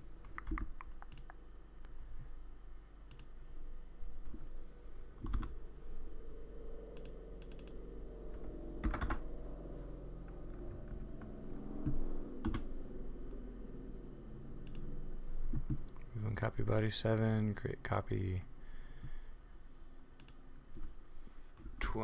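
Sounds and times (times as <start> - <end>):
keyboard keystrokes: 0.2 - 1.4, 8.8 - 9.2, 11.8 - 12.7
mouse clicks: 0.2 - 1.4.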